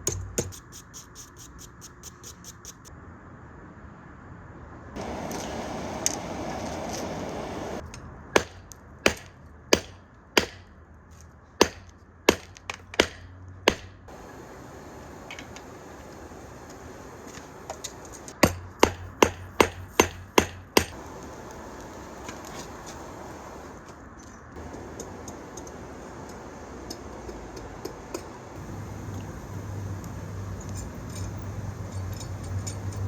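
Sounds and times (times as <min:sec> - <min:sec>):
steady rushing noise: 0:05.0 - 0:07.8, 0:14.1 - 0:18.4, 0:20.9 - 0:23.9, 0:24.6 - 0:33.0
hammer striking steel on anvil: 0:17.7 - 0:21.6.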